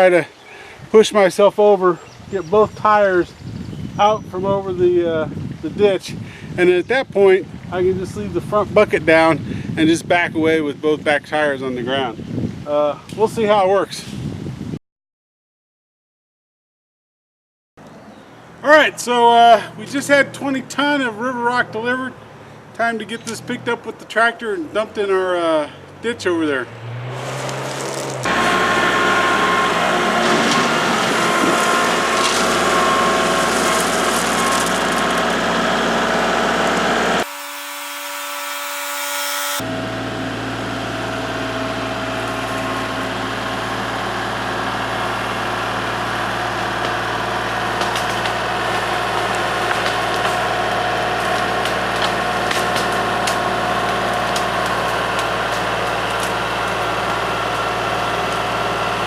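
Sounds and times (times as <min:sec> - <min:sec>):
tractor diesel engine running: 0:27.2 - 0:38.4, 0:39.6 - 0:59.0.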